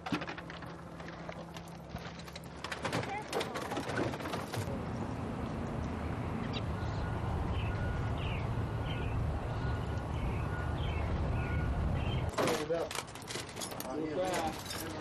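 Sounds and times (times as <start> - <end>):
birds chirping: 5.6 - 12.9.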